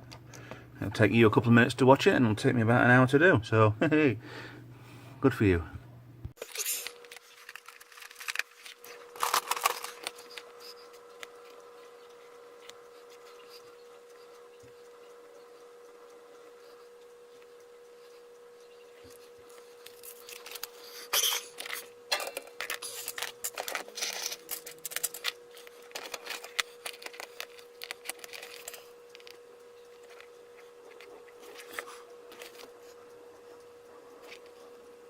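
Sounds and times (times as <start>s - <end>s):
faint steady hum: 0.0s - 35.0s
small plastic parts scraping and clicking: 6.4s - 11.6s, 19.8s - 29.4s.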